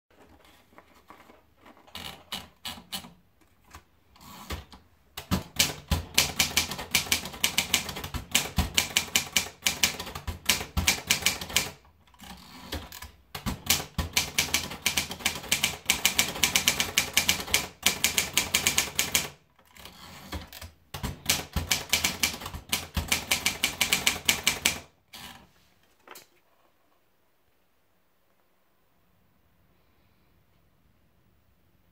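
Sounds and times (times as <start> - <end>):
manual typewriter keystrokes: 1.9 - 25.4.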